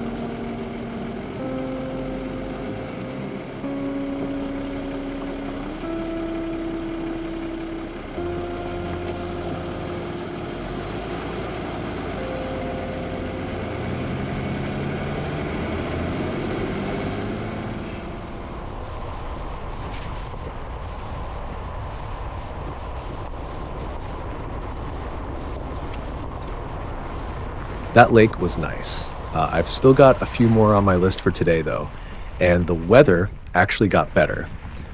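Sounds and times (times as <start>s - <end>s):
car engine pulling away: 0.0s - 19.0s.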